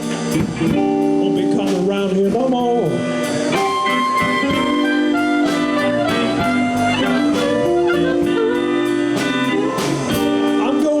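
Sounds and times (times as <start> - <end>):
blues band playing: 0.0 - 11.0
harmonica bending notes: 2.8 - 10.8.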